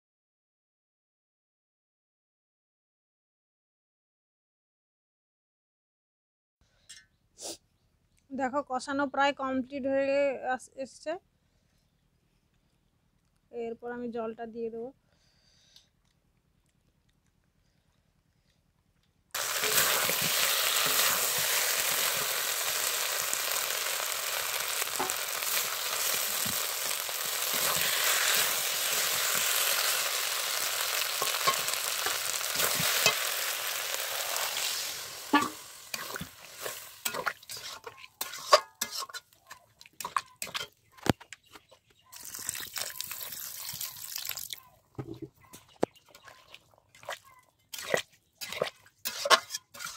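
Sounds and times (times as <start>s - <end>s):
crackles and clicks: 15.8s - 41.4s
water sizzling in hot pan: 19.4s - 38.9s, 42.2s - 44.5s.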